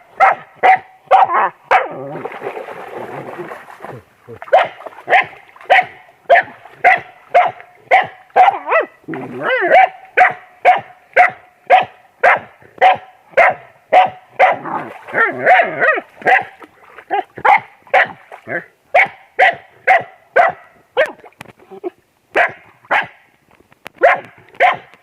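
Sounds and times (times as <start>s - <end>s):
dog barking rapidly: 0.2s - 2.0s, 4.5s - 9.0s, 9.6s - 16.5s, 17.1s - 18.2s, 19.0s - 21.2s, 22.4s - 23.2s, 24.0s - 24.9s.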